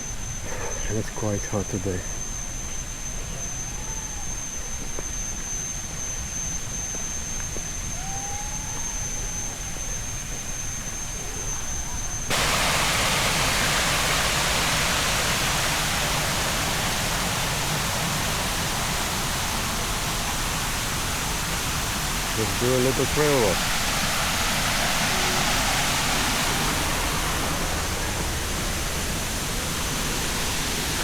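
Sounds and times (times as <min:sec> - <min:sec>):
thin high whine: 0:00.0 - 0:31.0
rushing water hiss: 0:07.6 - 0:31.0
low outdoor rumble: 0:11.1 - 0:31.0.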